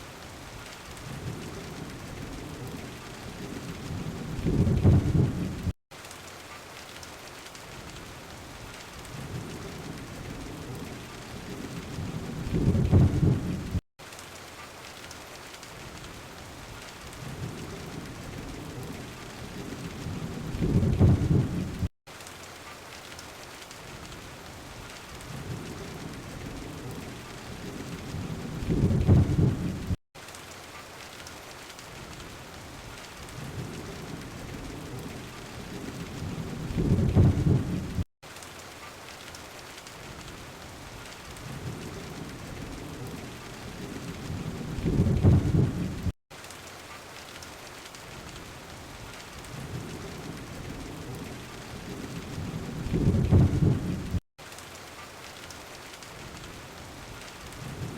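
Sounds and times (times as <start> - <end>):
steady rain: 0.0 - 57.9
low rolling thunder rumble: 1.0 - 5.7, 9.1 - 13.8, 17.2 - 21.9, 25.2 - 30.0, 33.3 - 38.0, 41.4 - 46.1, 49.5 - 54.2, 57.6 - 57.9.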